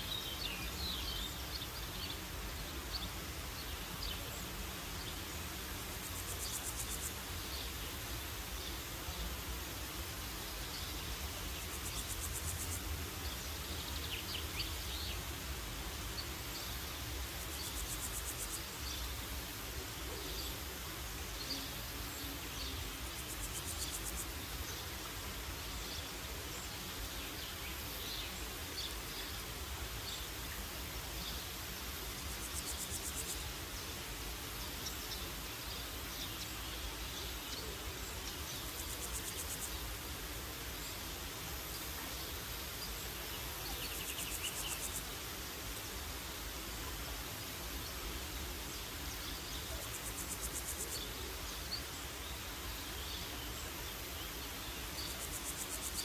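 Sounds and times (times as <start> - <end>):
birdsong chirps: 0.0 - 9.4, 40.7 - 45.1.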